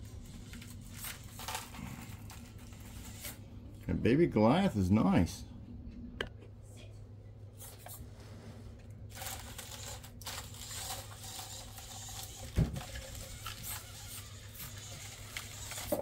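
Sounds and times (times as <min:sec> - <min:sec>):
small electric motor whirring: 0:02.6 - 0:03.4, 0:09.1 - 0:16.0.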